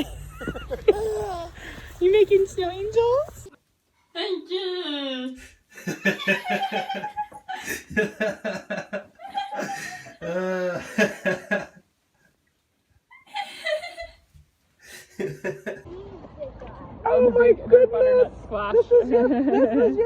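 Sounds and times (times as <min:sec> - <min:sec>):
people laughing: 0:00.0 - 0:01.8, 0:05.8 - 0:11.8, 0:14.9 - 0:15.9, 0:17.5 - 0:20.0.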